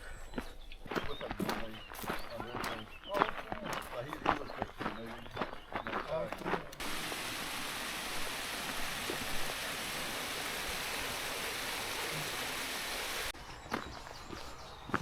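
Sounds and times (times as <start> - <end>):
running water rushing: 6.8 - 13.4.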